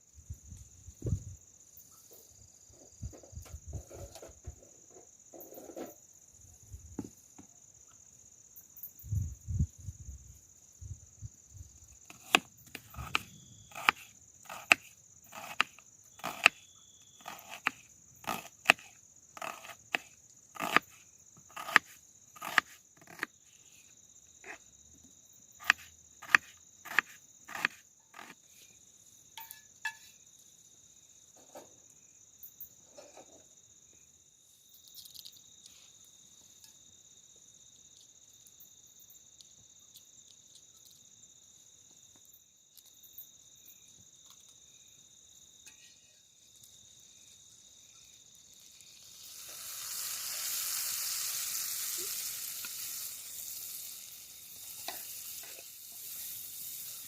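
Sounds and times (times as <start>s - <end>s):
crickets trilling: 0.0s - 57.0s.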